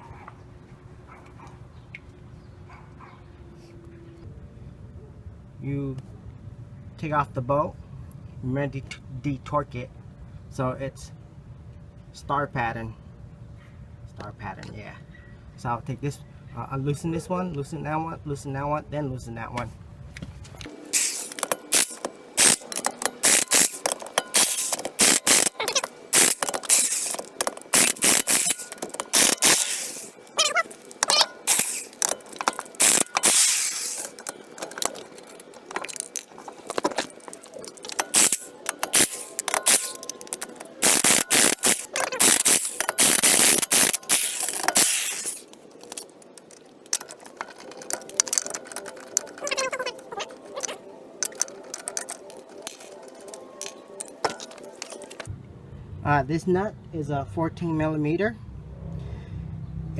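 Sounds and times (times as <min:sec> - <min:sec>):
impact wrench hammering: 0:21.0 - 0:35.1, 0:37.8 - 0:45.4
clinks of nuts and tools: 0:21.0 - 0:49.7, 0:51.2 - 0:55.3.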